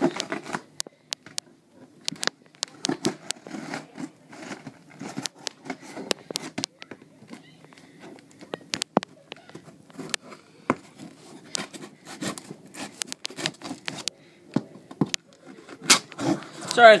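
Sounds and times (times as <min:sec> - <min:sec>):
cardboard clicks scrapes and rustles: 0:00.0 - 0:01.4, 0:02.1 - 0:06.8, 0:09.5 - 0:14.2, 0:15.0 - 0:17.0
knife cutting cardboard box: 0:02.9 - 0:06.6, 0:10.9 - 0:14.1, 0:15.7 - 0:16.8.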